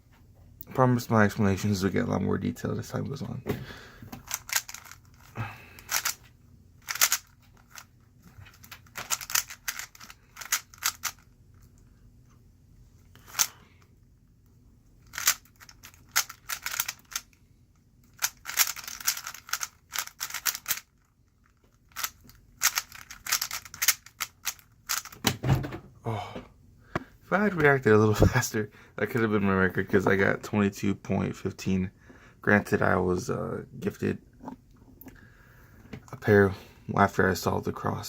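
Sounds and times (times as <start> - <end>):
puzzle cube clicking: 4.2 - 6.2, 6.8 - 7.8, 8.6 - 11.2, 15.1 - 17.3, 18.1 - 20.8, 22.0 - 25.2.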